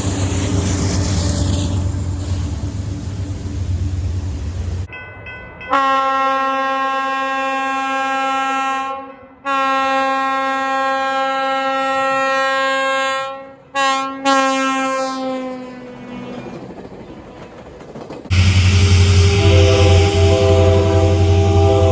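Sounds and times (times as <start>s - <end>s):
locomotive air horn blasts: 5.7s - 15.9s, 18.3s - 21.9s
low rumble: 18.3s - 21.9s.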